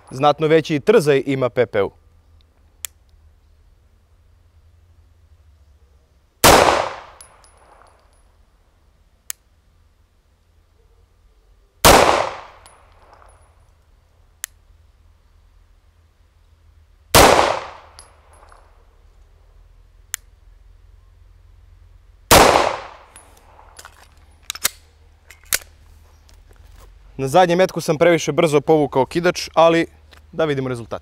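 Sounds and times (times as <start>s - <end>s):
pistol shots echoing: 6.4s - 7.9s, 11.8s - 13.2s, 17.2s - 18.5s, 22.3s - 23.2s.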